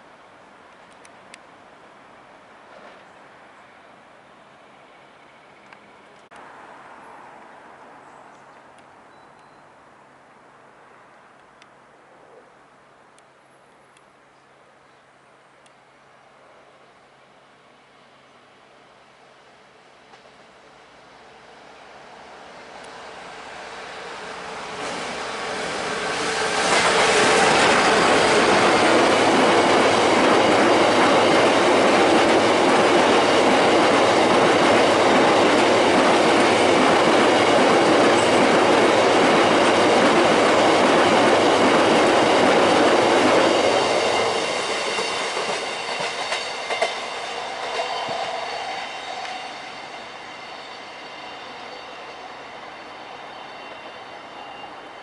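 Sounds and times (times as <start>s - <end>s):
train wheels on rails: 2.6s - 3.2s, 20.0s - 55.0s.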